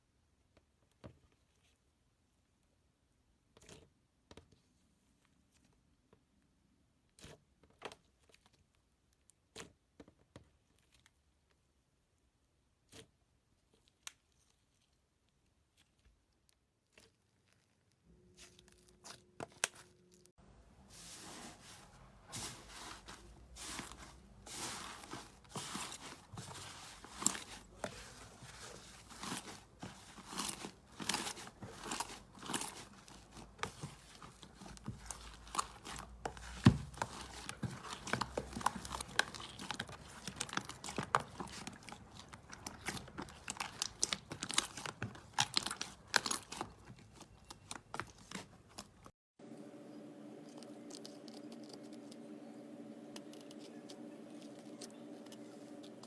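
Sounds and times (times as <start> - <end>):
slime crackling and popping: 28.6 - 48.8.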